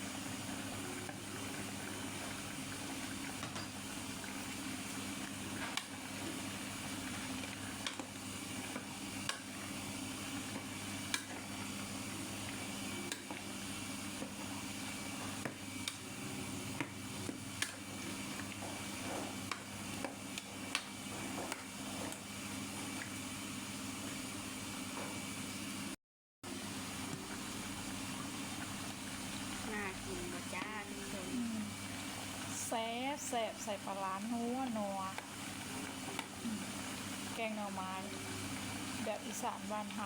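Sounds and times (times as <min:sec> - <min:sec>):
pot being stirred: 0:00.5 - 0:23.2.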